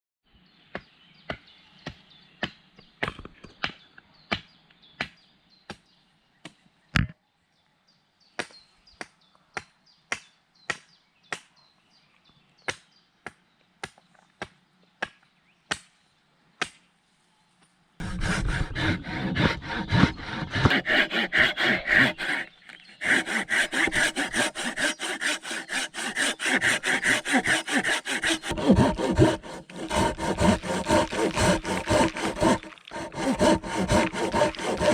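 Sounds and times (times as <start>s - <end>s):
saw cutting wood: 18.0s - 34.9s.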